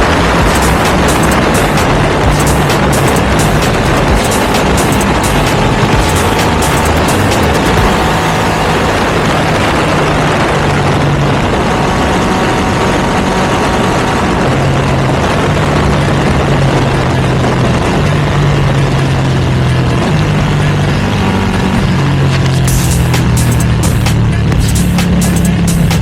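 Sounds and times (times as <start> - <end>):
motorcycle engine cruising: 0.0 - 26.0
wind rush: 0.0 - 26.0.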